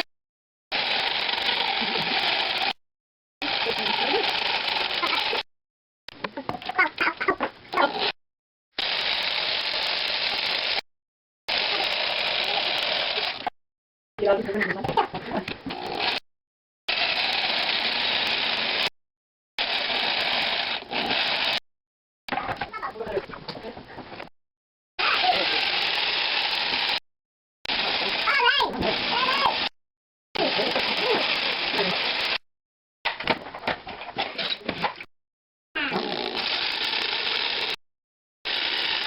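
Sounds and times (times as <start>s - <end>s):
jigsaw cutting pumpkin: 0.7s - 2.8s, 3.4s - 5.5s, 7.8s - 8.2s, 8.8s - 10.8s, 11.5s - 13.6s, 14.7s - 16.2s, 16.9s - 18.9s, 19.6s - 21.6s, 25.0s - 27.0s, 27.7s - 29.8s, 30.4s - 32.4s, 35.8s - 37.8s, 38.5s - 39.0s.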